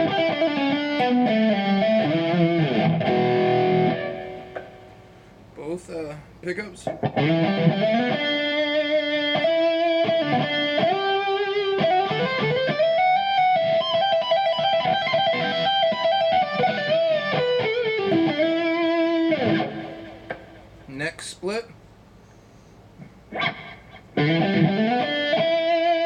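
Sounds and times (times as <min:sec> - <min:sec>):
distorted electric guitar lead: 0:00.0 - 0:05.0, 0:06.9 - 0:20.7, 0:23.3 - 0:26.0.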